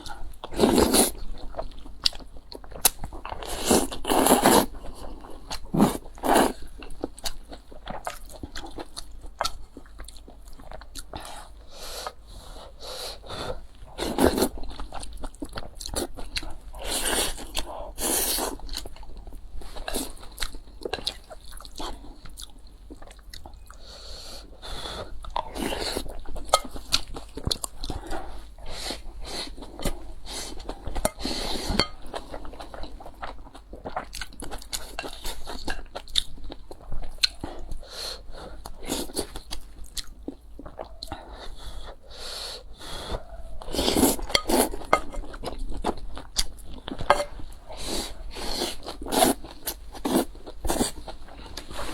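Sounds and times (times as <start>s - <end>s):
person chewing and biting food: 43.6s - 51.9s.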